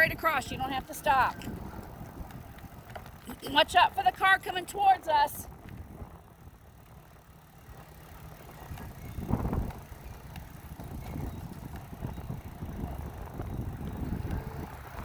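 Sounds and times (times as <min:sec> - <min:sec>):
wind rumbling on microphone: 0:00.0 - 0:03.8, 0:04.8 - 0:06.6, 0:08.4 - 0:15.0.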